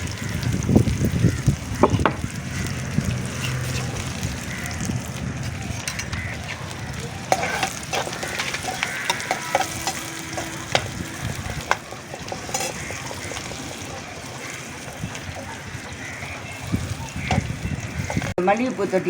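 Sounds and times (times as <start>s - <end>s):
oil sizzling in a pan: 0.0s - 19.0s
metal spoon knocking on pan: 1.8s - 2.2s, 7.3s - 13.6s.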